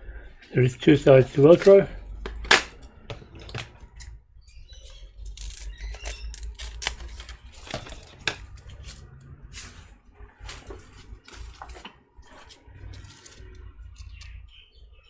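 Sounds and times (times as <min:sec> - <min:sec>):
velcro tape crackling: 0:04.9 - 0:14.4.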